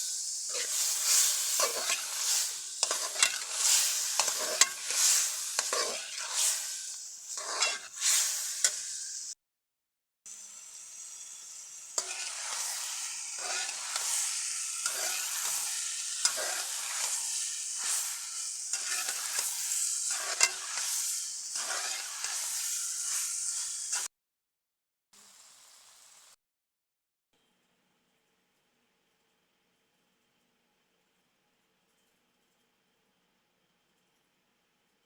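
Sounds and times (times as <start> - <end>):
spatula scraping a pan: 0.0 - 9.3, 11.8 - 24.1
food sizzling in a pan: 0.0 - 9.4, 10.3 - 24.1, 25.2 - 26.4.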